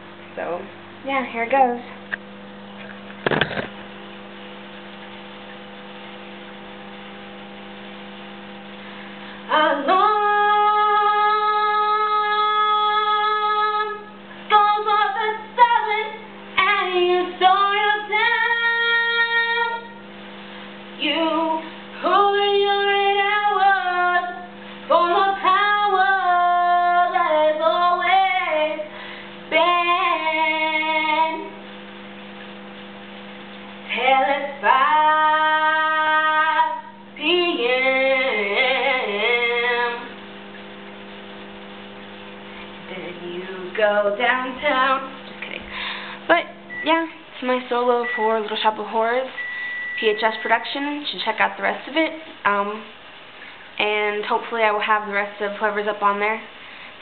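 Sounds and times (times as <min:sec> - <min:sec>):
steady low hum: 0:00.0 - 0:57.0
girl singing unaccompanied: 0:09.5 - 0:20.0, 0:21.0 - 0:28.9, 0:29.5 - 0:31.6, 0:33.9 - 0:40.1.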